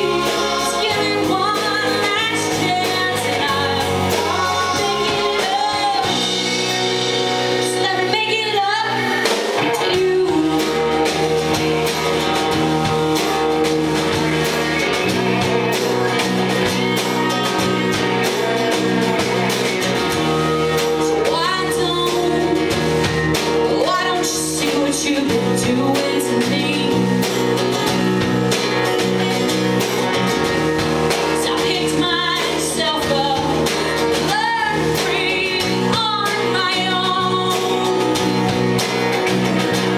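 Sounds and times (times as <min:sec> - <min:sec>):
woman singing: 0:00.0 - 0:11.8, 0:20.2 - 0:27.5, 0:31.2 - 0:38.9
live band playing: 0:00.0 - 0:39.9.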